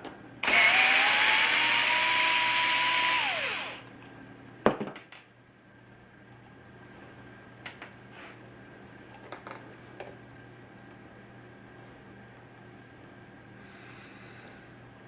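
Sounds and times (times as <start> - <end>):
power tool motor spinning: 0.4 - 3.9.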